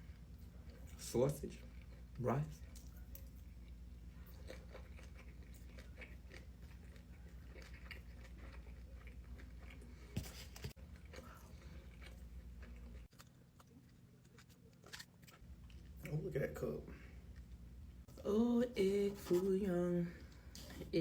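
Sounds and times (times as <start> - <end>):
mouth chewing food: 0.0 - 16.2.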